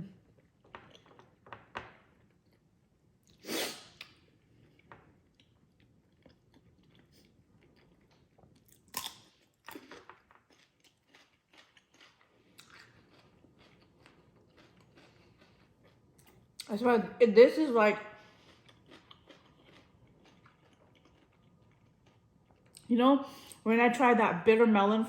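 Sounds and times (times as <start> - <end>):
chewing food close-up: 2.3 - 16.7, 18.1 - 22.9.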